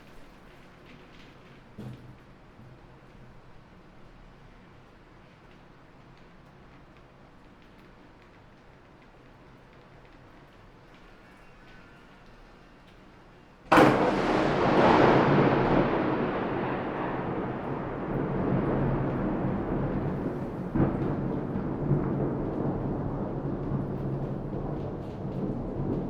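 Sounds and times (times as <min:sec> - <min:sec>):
rain: 0:00.0 - 0:26.0
thunderclap with rolling rumble: 0:13.7 - 0:26.0.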